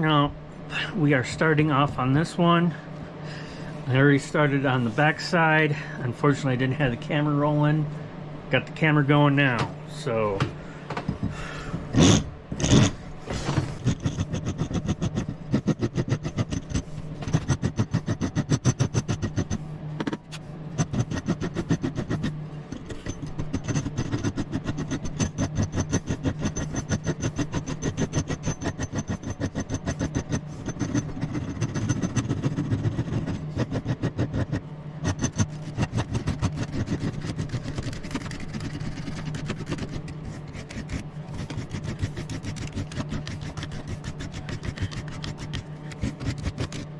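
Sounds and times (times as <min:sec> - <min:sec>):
power tool humming and whining: 0:11.2 - 0:46.9
rapid rhythmic rasping: 0:12.0 - 0:46.9.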